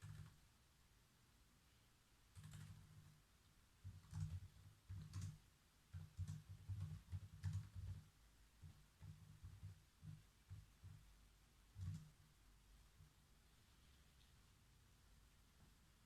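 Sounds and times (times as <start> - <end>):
keyboard typing clicks: 0.0 - 0.4, 2.4 - 3.1, 3.9 - 9.8, 11.8 - 12.2.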